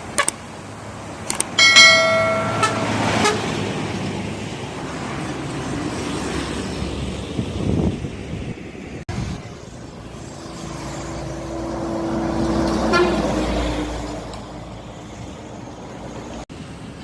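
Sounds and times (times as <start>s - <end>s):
bus engine and tyre noise: 0.0s - 17.0s
bus horn blast: 2.1s - 3.6s, 12.8s - 13.4s.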